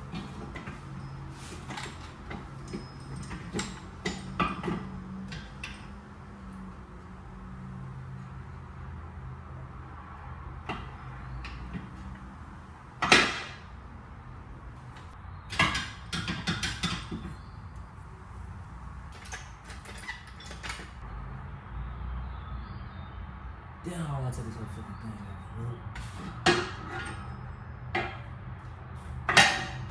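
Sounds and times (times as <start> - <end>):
hand tools clanking on metal: 0.0 - 6.1, 13.0 - 13.7, 15.0 - 17.5, 19.1 - 21.0, 25.8 - 28.3, 29.0 - 29.9.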